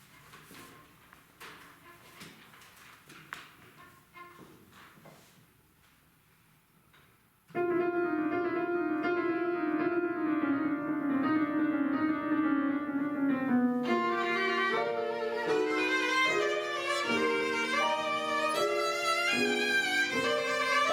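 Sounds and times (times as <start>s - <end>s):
piano chords: 7.6s - 20.9s
violin playing: 13.5s - 20.9s.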